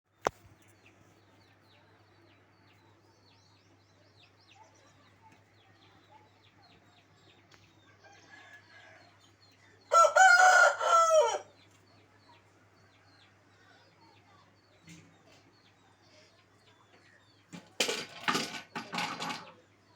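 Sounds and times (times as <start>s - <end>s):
rooster crowing: 9.9s - 11.5s.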